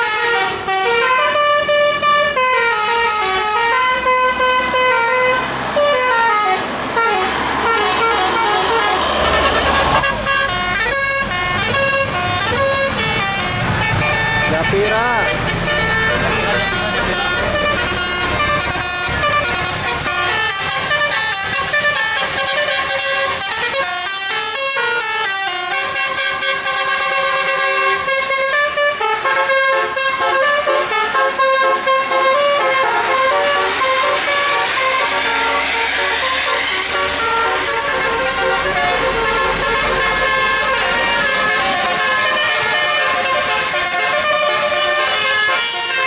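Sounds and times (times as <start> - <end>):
musical air horn playing a tune: 0.0 - 46.0
rushing noise: 2.7 - 24.1, 30.9 - 46.0.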